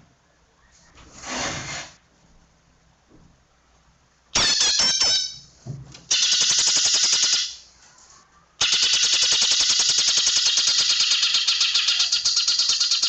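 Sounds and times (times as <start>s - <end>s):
bird singing rapid high notes: 4.4s - 5.5s, 6.1s - 7.6s.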